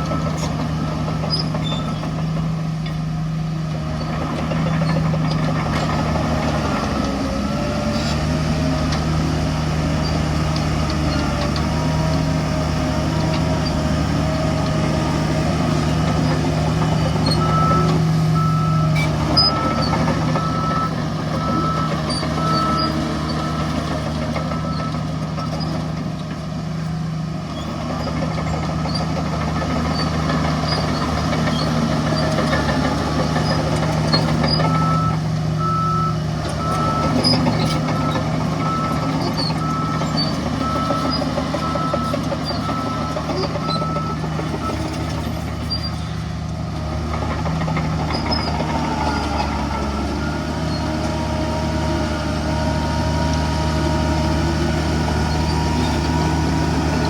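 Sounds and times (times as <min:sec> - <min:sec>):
reversing alarm beeping: 0:00.0 - 0:01.8, 0:16.6 - 0:25.6, 0:34.4 - 0:45.0, 0:48.8 - 0:52.1
heavy diesel machinery running: 0:00.0 - 0:57.0.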